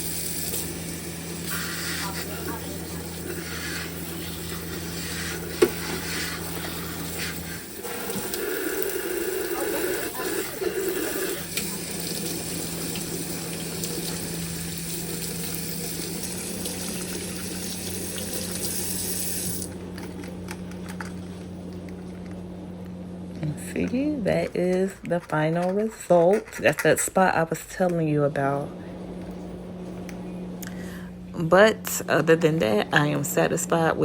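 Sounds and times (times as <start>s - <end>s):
faucet running into sink: 0.0s - 19.7s.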